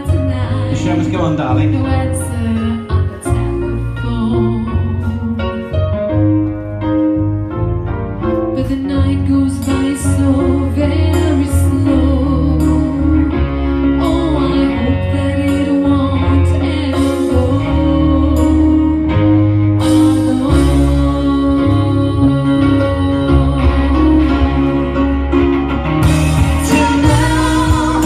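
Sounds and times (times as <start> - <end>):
music with drum beat and bass: 23.7 - 28.0.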